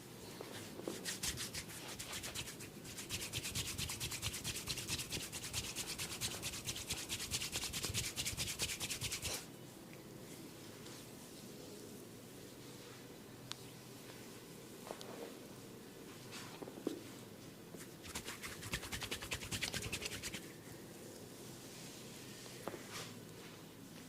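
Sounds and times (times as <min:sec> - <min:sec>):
rubbing on hair and scalp: 0:00.4 - 0:09.4, 0:17.8 - 0:20.5.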